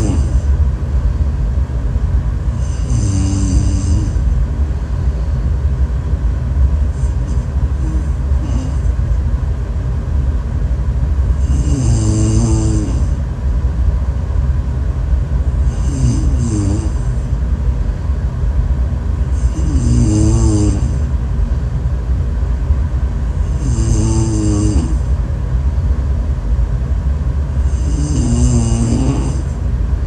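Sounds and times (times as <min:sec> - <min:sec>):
person snoring: 0:00.0 - 0:00.5, 0:02.6 - 0:04.4, 0:06.9 - 0:09.0, 0:11.4 - 0:13.2, 0:15.6 - 0:17.2, 0:19.3 - 0:21.1, 0:23.4 - 0:25.1, 0:27.6 - 0:29.6
constant low rumble: 0:00.0 - 0:30.0.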